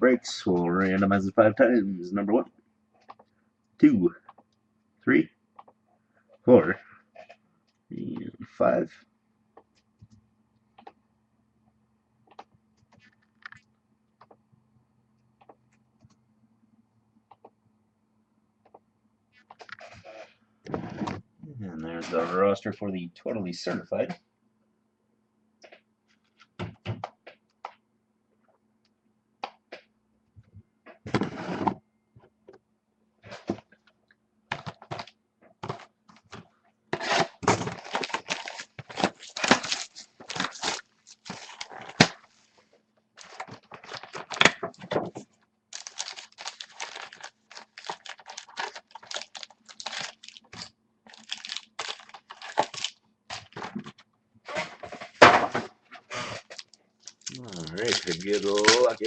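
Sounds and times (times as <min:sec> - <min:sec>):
wrapper crinkling and tearing: 0:37.4 - 0:42.4, 0:43.2 - 0:44.5, 0:45.7 - 0:53.7, 0:56.4 - 0:59.0.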